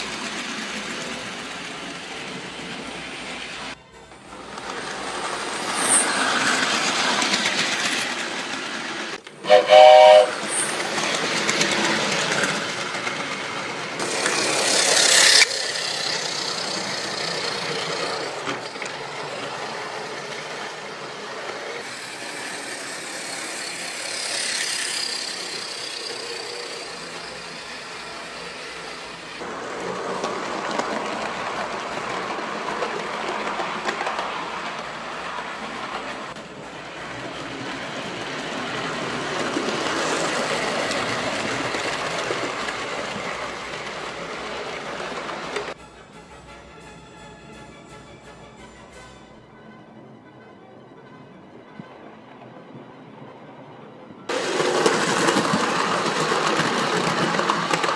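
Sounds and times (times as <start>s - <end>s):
miniature train rolling on track: 0.0s - 49.6s, 53.6s - 57.9s
train whistle blast: 9.4s - 10.7s.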